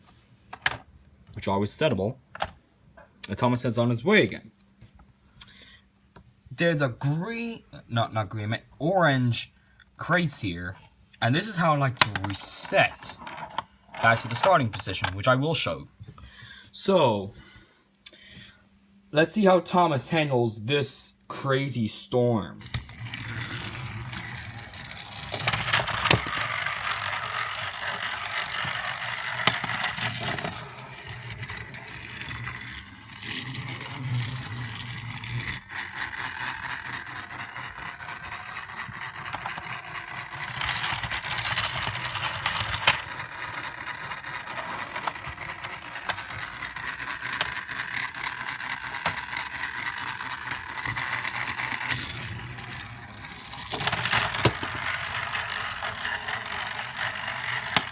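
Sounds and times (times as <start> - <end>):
toy train motor whirring and rattling: 11.4 - 15.1, 22.6 - 57.9.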